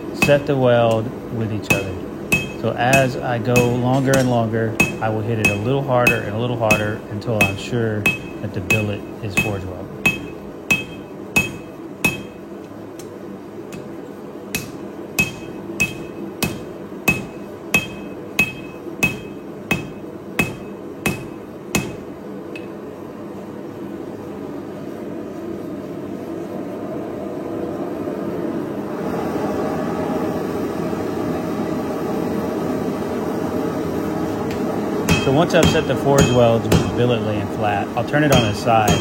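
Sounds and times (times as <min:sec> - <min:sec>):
hammer striking hot steel: 0:00.0 - 0:13.1, 0:13.7 - 0:22.8, 0:34.5 - 0:37.4, 0:38.2 - 0:39.0.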